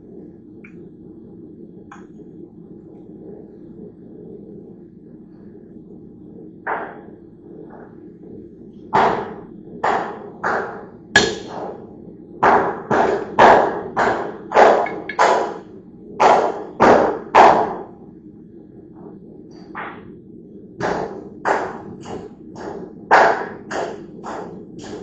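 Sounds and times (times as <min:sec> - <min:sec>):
hammer striking metal: 0:11.2 - 0:11.8, 0:12.9 - 0:15.6.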